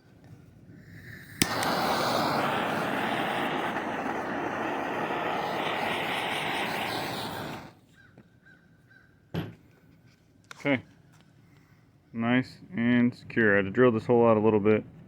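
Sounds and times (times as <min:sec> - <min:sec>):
blowtorch flame roaring: 0:00.8 - 0:07.8.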